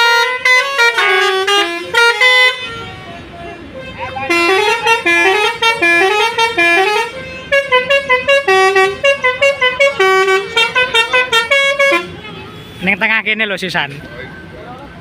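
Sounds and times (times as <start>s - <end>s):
bus musical horn melody: 0.0s - 12.8s.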